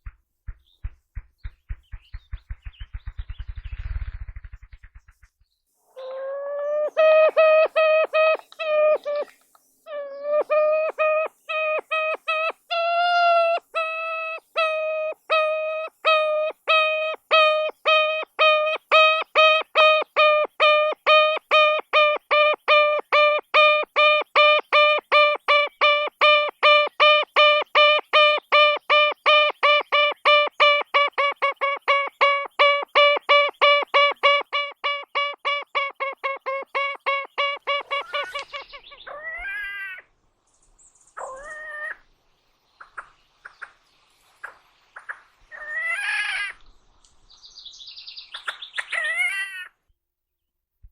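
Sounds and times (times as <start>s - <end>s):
grouse call notes: 6.0s - 40.0s.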